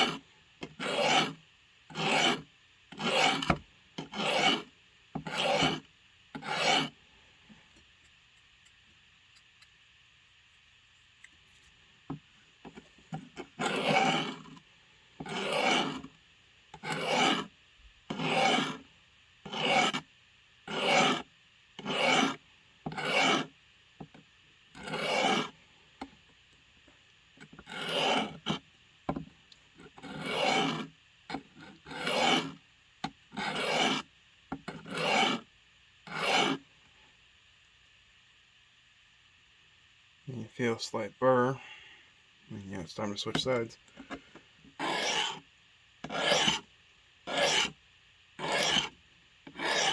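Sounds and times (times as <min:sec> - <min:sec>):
blade sharpening strokes: 0:00.8 - 0:01.3, 0:02.0 - 0:02.4, 0:04.1 - 0:04.6, 0:44.8 - 0:45.4, 0:46.1 - 0:46.6, 0:47.3 - 0:47.7, 0:48.4 - 0:48.9, 0:49.6 - 0:49.9.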